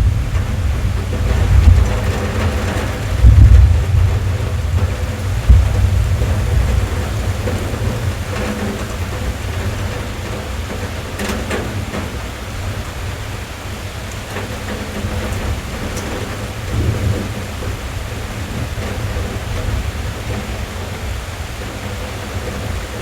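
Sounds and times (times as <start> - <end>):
deep low rumble: 0.0 - 8.4
rain on car roof: 0.0 - 23.0.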